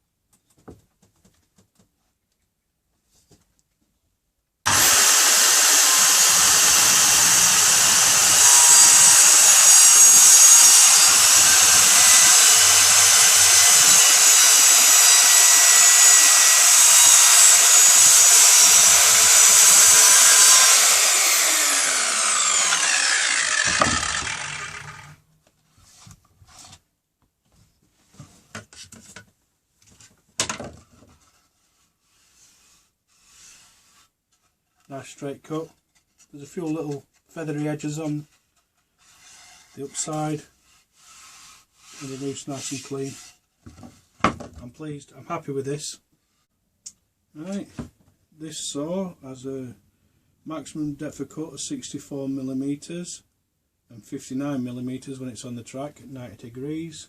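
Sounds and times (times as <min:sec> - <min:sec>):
circular saw cutting wood: 0:04.7 - 0:25.2, 0:39.0 - 0:43.4.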